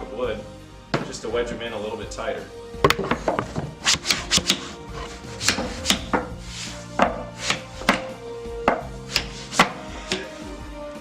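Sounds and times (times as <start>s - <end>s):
background music: 0.0s - 11.0s
sharp taps on wood wedges: 2.9s - 4.7s, 5.4s - 6.3s, 7.5s - 8.1s, 8.7s - 10.3s.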